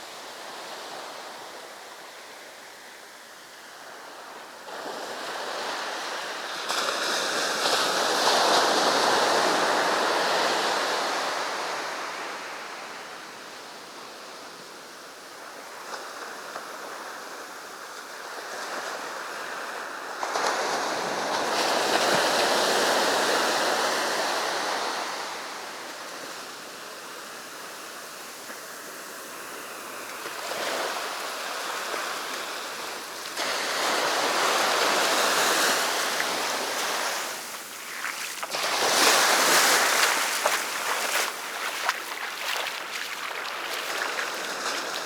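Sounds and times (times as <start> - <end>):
sea waves breaking on beach: 4.7 - 12.8, 28.5 - 45.0.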